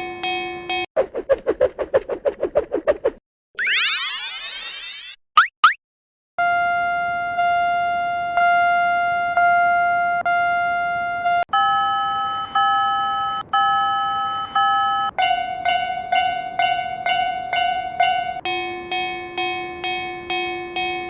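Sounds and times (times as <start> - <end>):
electronic warning bell chime: 11.5 - 16.4, 18.2 - 21.0.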